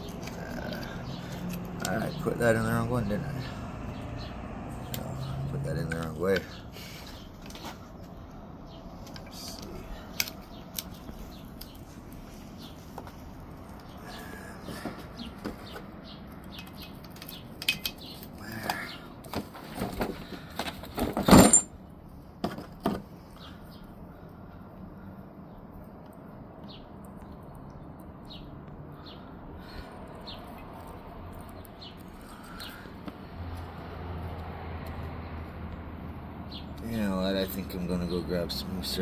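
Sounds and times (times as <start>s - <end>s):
metal parts clicking and knocking: 16.5s - 18.4s, 19.8s - 21.8s.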